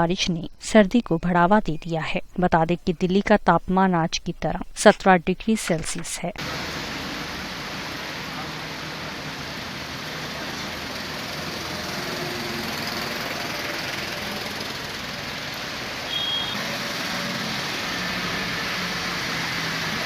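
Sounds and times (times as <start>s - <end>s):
heavy rain: 6.4s - 20.0s
tyres on wet road: 6.4s - 20.0s.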